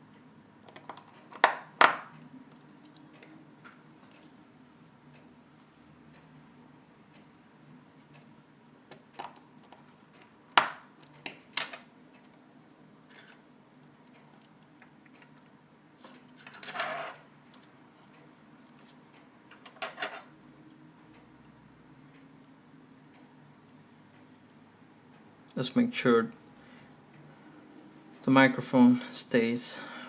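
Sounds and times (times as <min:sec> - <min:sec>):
faint steady hum: 0:00.0 - 0:30.0
tools clicking on phone parts: 0:00.7 - 0:03.6, 0:08.9 - 0:12.3.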